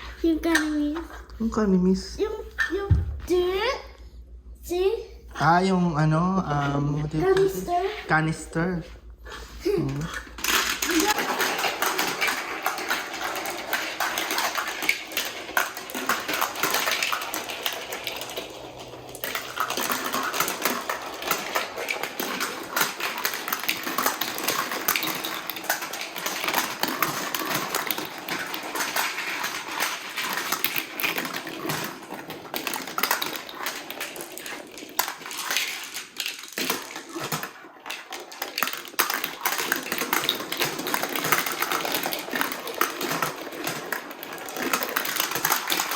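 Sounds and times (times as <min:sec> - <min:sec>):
marbles rattling through marble run: 0:09.8 - 0:45.9.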